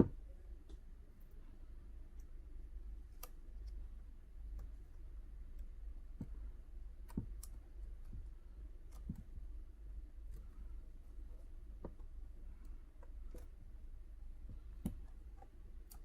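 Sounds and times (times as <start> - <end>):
low steady hum: 0.0 - 16.0
small clicks and taps: 5.5 - 9.4, 11.8 - 13.6, 14.4 - 16.0.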